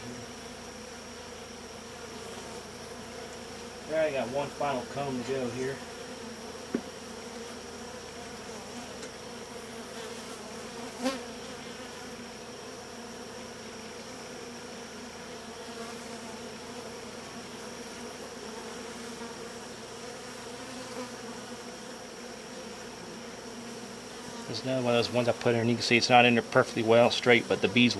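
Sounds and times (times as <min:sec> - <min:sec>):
honeybees buzzing: 0:00.0 - 0:27.9
brief knock: 0:06.7 - 0:06.9.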